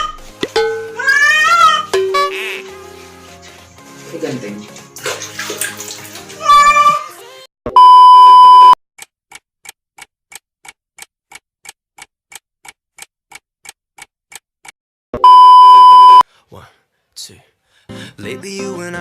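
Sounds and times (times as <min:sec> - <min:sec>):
cat meowing: 0:01.0 - 0:01.9, 0:06.4 - 0:07.1
steady electronic beep: 0:07.8 - 0:08.8, 0:15.2 - 0:16.2
clock ticking: 0:09.0 - 0:14.8.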